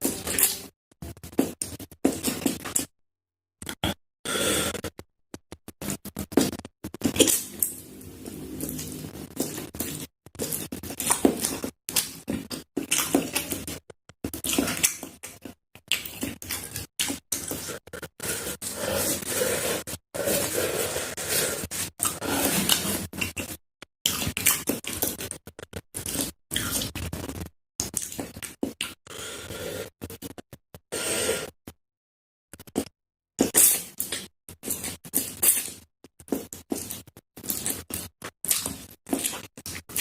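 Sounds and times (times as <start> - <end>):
chewing: 5.8 - 29.3, 33.4 - 40.0
noodle slurping: 5.9 - 29.9.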